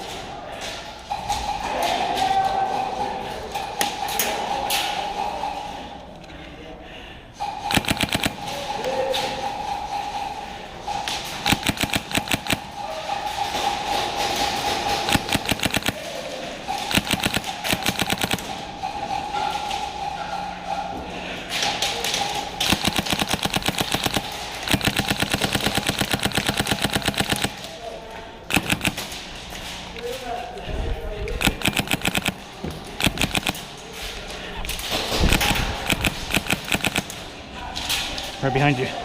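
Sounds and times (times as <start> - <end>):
airsoft guns firing bursts: 7.4 - 19.6, 22.0 - 27.8, 28.5 - 29.2, 31.4 - 33.7, 34.7 - 37.3.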